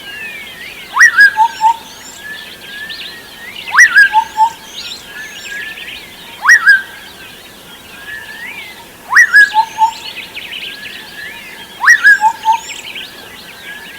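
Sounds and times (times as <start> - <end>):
chorus of high bird chirps: 0.0 - 13.9
loud bird call: 9.1 - 10.2, 11.7 - 12.9.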